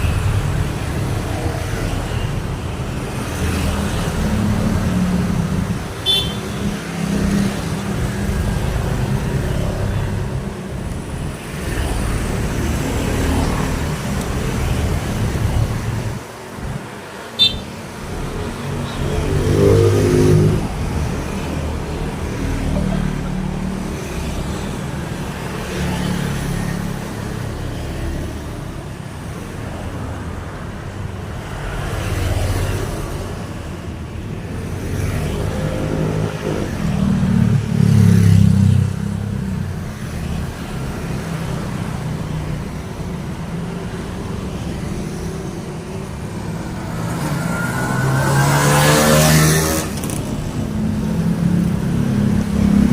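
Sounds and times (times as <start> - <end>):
road traffic passing: 0.0 - 52.9
loud vehicle passing: 18.1 - 26.8, 44.3 - 52.9.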